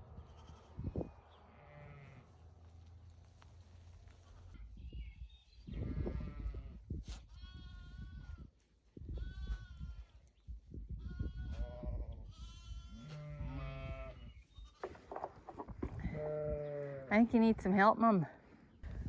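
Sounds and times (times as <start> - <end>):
sheep bleating: 0.2 - 0.8, 1.5 - 2.3, 11.2 - 15.1, 15.8 - 17.1.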